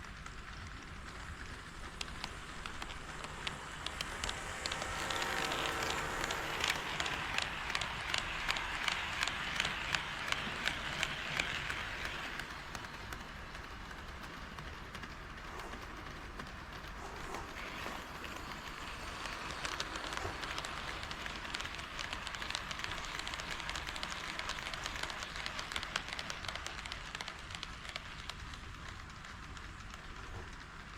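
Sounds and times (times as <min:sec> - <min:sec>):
model train wheels clicking on track: 0:00.0 - 0:30.9.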